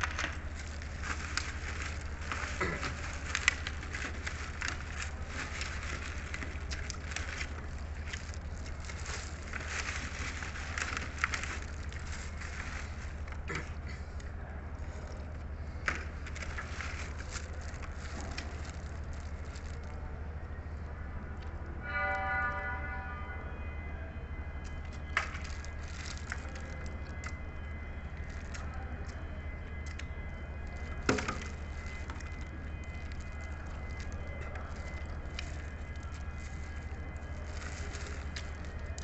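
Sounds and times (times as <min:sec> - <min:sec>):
clicks and crackles: 0:00.0 - 0:14.3, 0:14.9 - 0:20.0, 0:24.6 - 0:27.4, 0:28.1 - 0:39.0.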